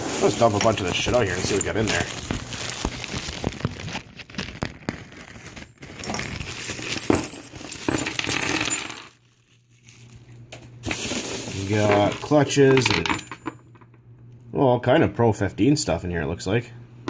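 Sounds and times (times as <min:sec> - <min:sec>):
small metal parts clattering: 0:00.1 - 0:02.6, 0:05.3 - 0:09.2, 0:10.8 - 0:13.8.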